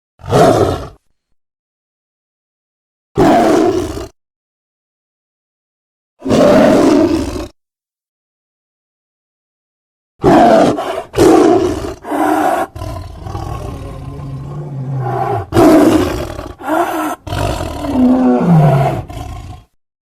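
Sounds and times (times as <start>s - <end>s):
gorilla roaring and growling: 3.2s - 4.1s, 6.2s - 7.6s, 10.2s - 19.8s.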